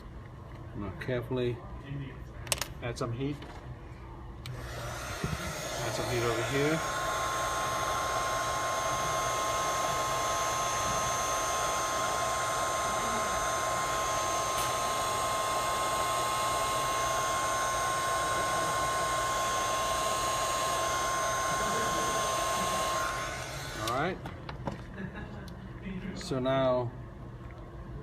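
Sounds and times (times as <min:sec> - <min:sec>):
hot-air blower whining: 0:04.4 - 0:24.2.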